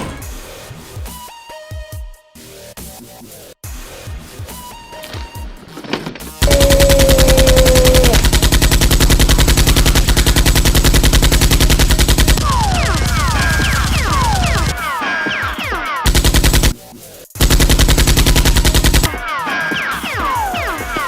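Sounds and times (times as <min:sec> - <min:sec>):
machine-gun fire: 0:06.4 - 0:14.8, 0:16.1 - 0:16.8, 0:17.4 - 0:19.2.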